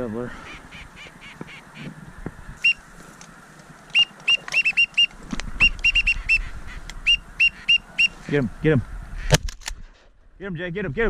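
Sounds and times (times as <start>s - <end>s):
high whistled peeps: 2.6s - 2.8s, 3.9s - 8.3s.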